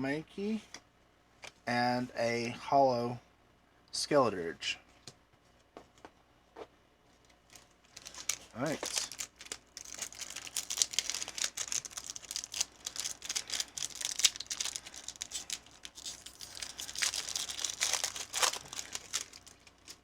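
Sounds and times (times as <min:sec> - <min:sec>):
foil wrapper crinkling and tearing: 0:07.5 - 0:20.0.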